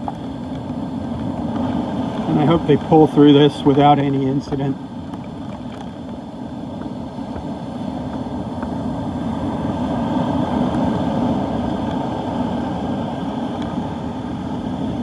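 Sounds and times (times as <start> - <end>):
muffled wind and surf rumble: 0.0 - 15.0.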